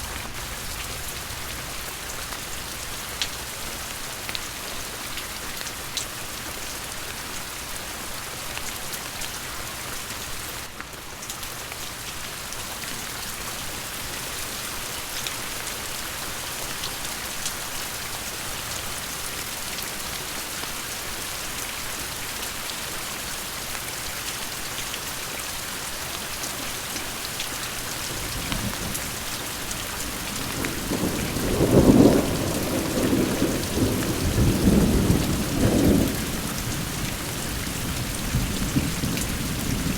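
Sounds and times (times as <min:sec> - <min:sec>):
steady rain: 0:00.0 - 0:39.9
raindrops tapping on a surface: 0:26.1 - 0:37.2
thunder rumbling: 0:28.1 - 0:39.9.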